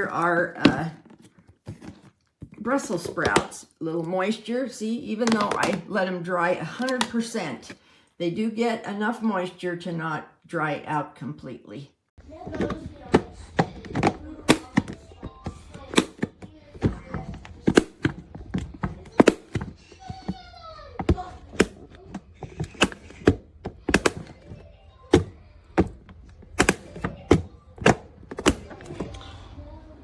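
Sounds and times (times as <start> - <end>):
plastic containers knocking and clicking: 0.0 - 3.6, 5.2 - 6.0, 12.2 - 29.3.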